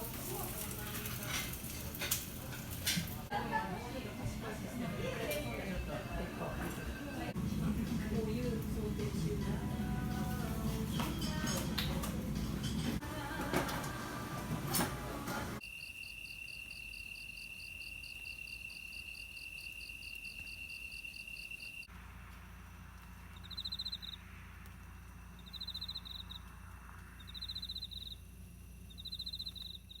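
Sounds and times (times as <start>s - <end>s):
fast pulsing insect chirp: 15.6s - 21.9s, 22.7s - 30.0s
insect high trill: 15.6s - 21.9s, 23.4s - 30.0s
insect buzzy bursts: 15.6s - 30.0s
low hum: 21.9s - 30.0s.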